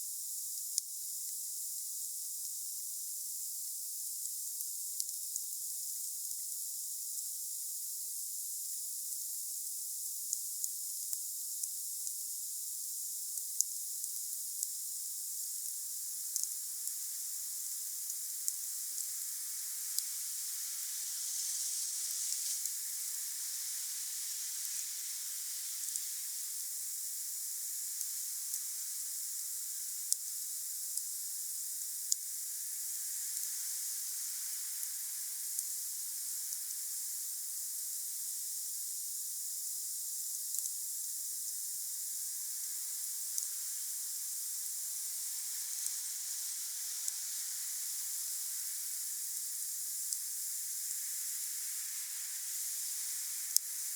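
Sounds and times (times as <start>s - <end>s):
wood fire hissing: 15.4s - 38.8s, 41.5s - 53.9s.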